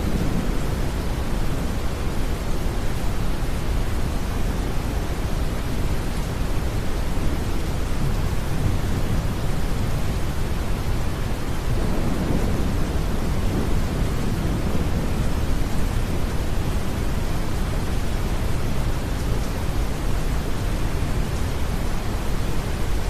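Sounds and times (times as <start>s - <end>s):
rain: 0.0s - 23.0s
distant thunder rumble: 11.5s - 18.9s.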